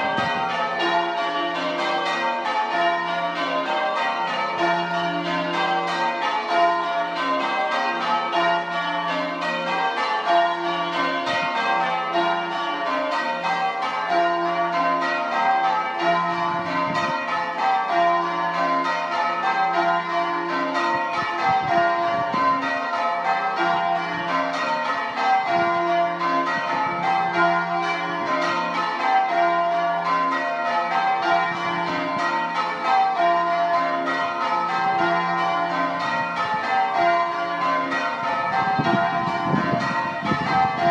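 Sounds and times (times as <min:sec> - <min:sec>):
church bells change ringing: 0:00.0 - 0:40.9.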